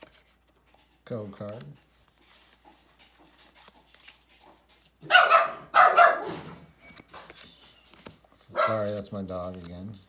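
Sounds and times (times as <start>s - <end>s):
cards being handled: 0.0s - 5.0s, 6.3s - 10.0s
dog barking: 5.0s - 6.4s, 8.5s - 8.9s.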